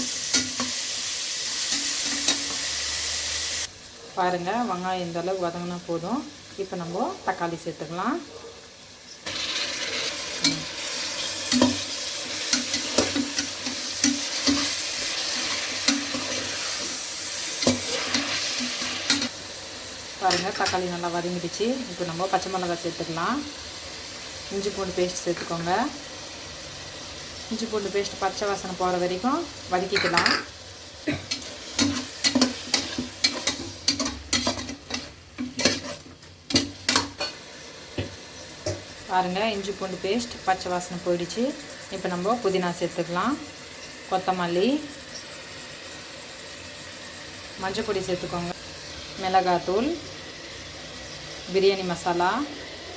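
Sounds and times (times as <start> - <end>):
vegetables sizzling in hot oil: 0.0 - 52.9
utensil scraping metal pan: 31.3 - 37.4.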